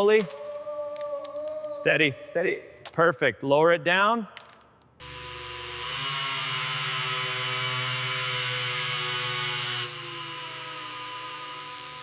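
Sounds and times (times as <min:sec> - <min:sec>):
electric motor whirring: 0:05.0 - 0:12.0.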